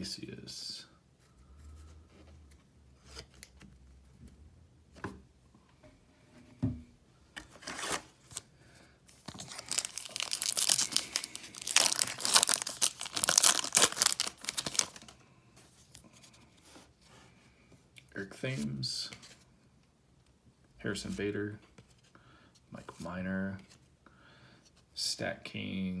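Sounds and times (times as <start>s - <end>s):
foil wrapper tearing and crinkling: 9.3s - 15.2s.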